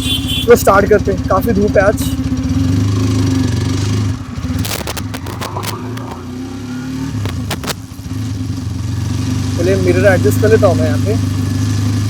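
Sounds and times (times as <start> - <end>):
motorcycle engine idling: 0.0 - 12.0
sharp clicks and knocks: 4.5 - 6.2, 7.2 - 7.8.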